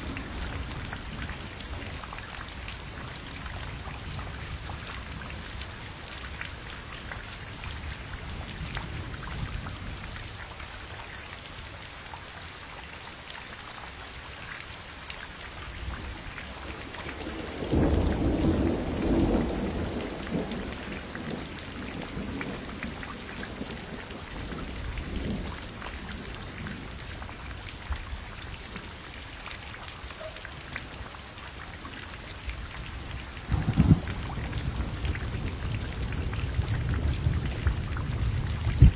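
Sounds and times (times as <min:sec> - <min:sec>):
rain pattering: 0:00.0 - 0:38.9
thunder rumbling: 0:17.1 - 0:26.9, 0:33.5 - 0:38.9.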